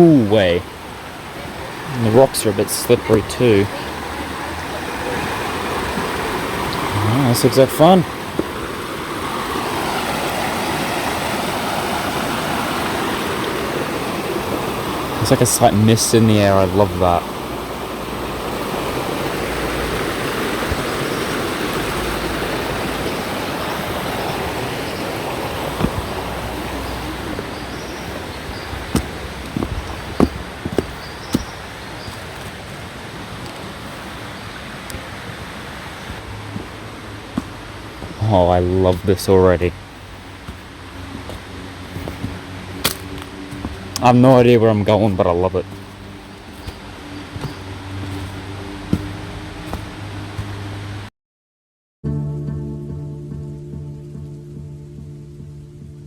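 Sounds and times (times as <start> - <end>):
creek water over rocks: 0.0 - 51.1
short sharp knocks: 25.8 - 32.5.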